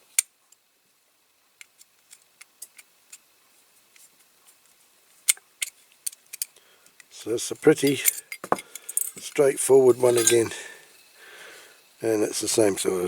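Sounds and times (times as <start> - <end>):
metal parts being handled: 7.7 - 9.3, 9.9 - 10.8.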